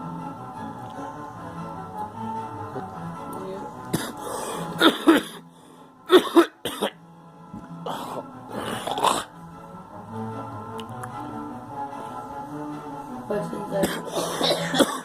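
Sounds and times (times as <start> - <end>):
background music: 0.0 - 15.0
girl coughing: 3.9 - 4.2, 4.8 - 5.4, 6.1 - 7.0, 13.8 - 15.0.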